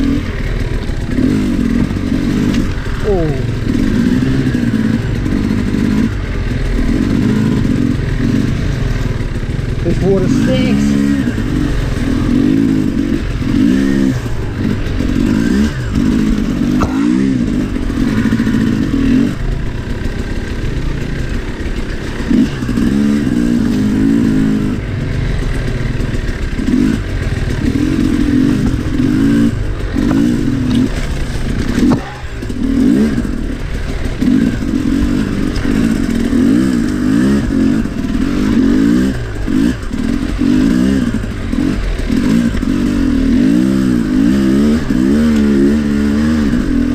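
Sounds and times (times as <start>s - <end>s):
dirt bike engine revving: 0.0s - 46.9s
bike clattering over rough ground: 26.0s - 38.0s.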